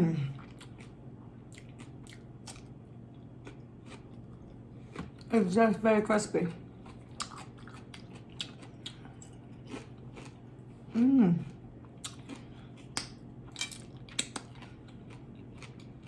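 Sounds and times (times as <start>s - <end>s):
crunchy chewing: 0.4s - 5.3s, 6.7s - 10.9s, 11.5s - 16.0s
person humming: 10.9s - 11.6s.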